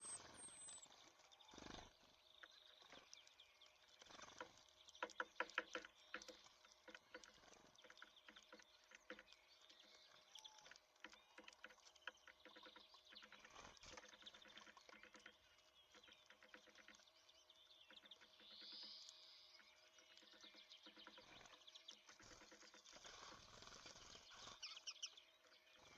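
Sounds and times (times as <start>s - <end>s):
faint high bird chirps: 0.0s - 1.8s, 7.9s - 22.9s
bird bills tapping on seeds: 2.4s - 24.6s.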